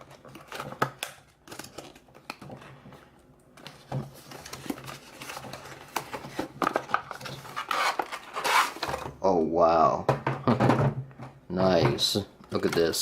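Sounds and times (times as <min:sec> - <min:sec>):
plastic packaging clicks and rustles: 0:00.0 - 0:09.0.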